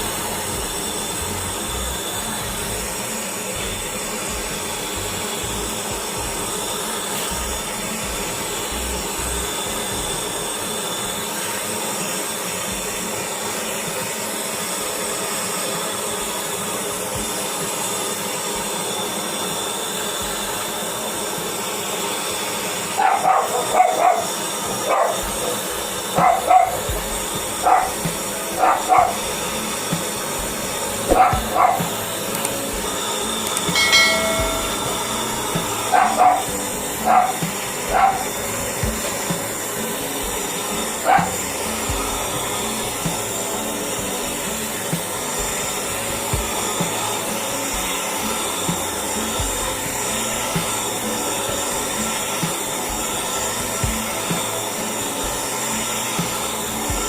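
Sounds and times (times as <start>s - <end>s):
steady hiss: 0.0s - 57.0s
dog barking: 23.0s - 25.3s, 26.2s - 26.8s, 27.6s - 28.0s, 28.6s - 29.2s, 31.1s - 32.0s, 35.9s - 38.3s, 41.0s - 41.4s.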